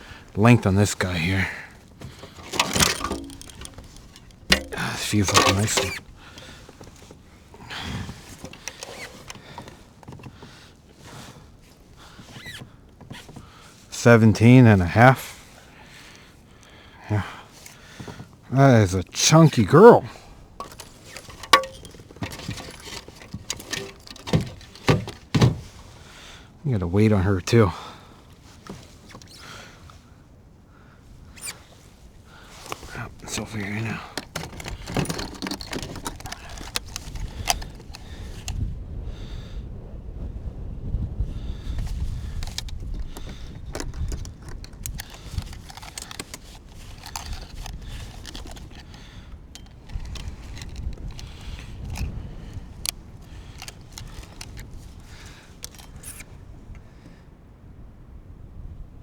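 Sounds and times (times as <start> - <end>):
light metallic rattling of gear: 2.0 - 10.5, 17.5 - 18.2, 19.3 - 25.9, 28.4 - 29.5, 32.5 - 38.7, 41.7 - 56.8
small clicks: 2.2 - 7.0, 8.3 - 9.7, 20.6 - 25.3, 32.6 - 38.6, 41.8 - 56.8
sharp click: 2.5 - 6.0, 20.6 - 22.0
wind rumbling on microphone: 35.8 - 45.7.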